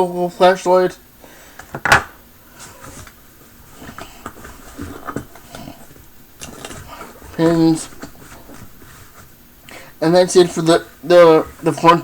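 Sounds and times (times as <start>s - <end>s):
faint rustling: 2.4s - 12.0s.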